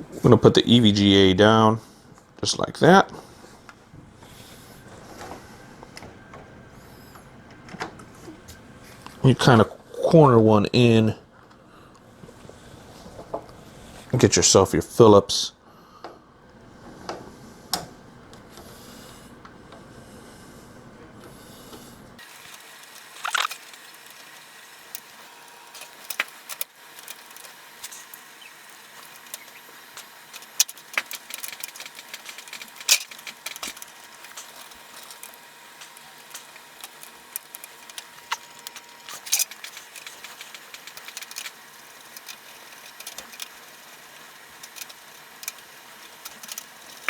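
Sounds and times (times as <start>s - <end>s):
steady low hiss: 0.0s - 47.0s
screwdriver clicking on metal: 29.0s - 43.5s, 44.6s - 47.0s.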